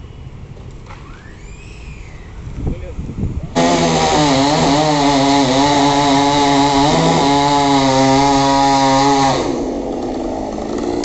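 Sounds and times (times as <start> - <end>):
chainsaw engine running: 3.6 - 11.0.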